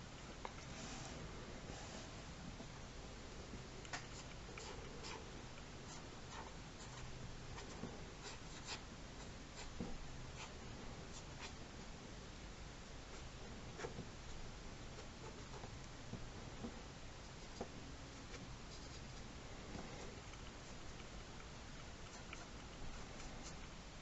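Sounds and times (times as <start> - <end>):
steady background hiss: 0.0 - 24.0
pen scratching on paper: 4.0 - 5.3, 5.9 - 9.8.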